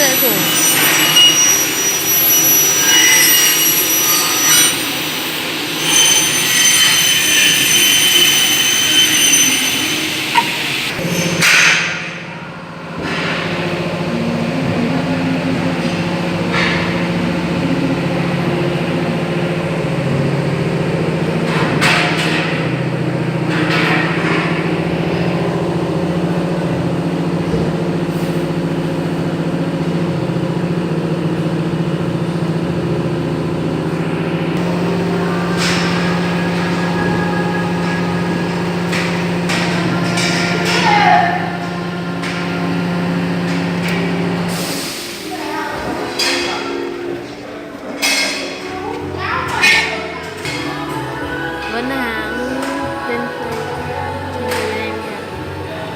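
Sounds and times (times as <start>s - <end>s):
saw motor humming: 0.0s - 11.4s, 33.6s - 40.8s.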